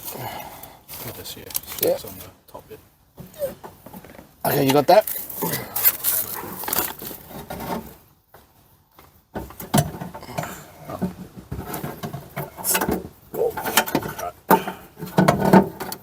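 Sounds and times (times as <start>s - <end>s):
metal clinks and scrapes: 4.5s - 8.0s.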